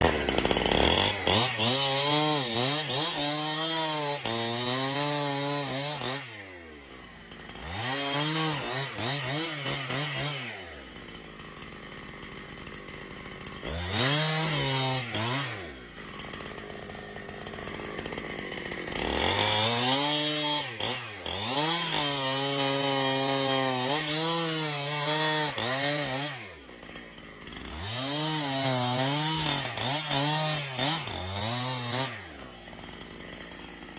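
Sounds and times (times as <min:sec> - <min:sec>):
chainsaw cutting wood: 0:00.0 - 0:33.9
chainsaw idling: 0:00.0 - 0:33.9.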